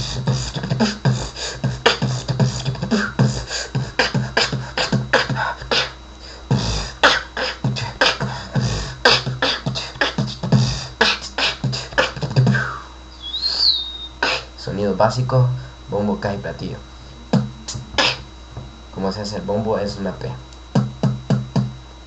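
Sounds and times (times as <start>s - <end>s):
beatboxing: 0.0s - 14.6s, 17.2s - 18.3s, 20.7s - 21.8s
low sliding vocal tone: 16.8s - 19.2s.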